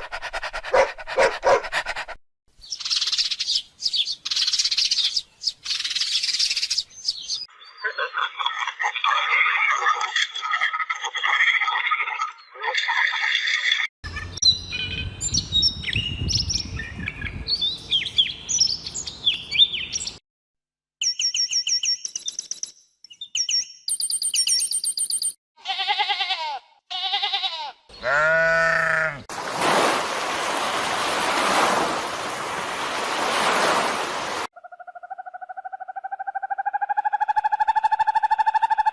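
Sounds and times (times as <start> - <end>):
twittering bird calls: 2.6 - 8.5, 34.6 - 38.9
pitched animal calls: 25.7 - 29.3.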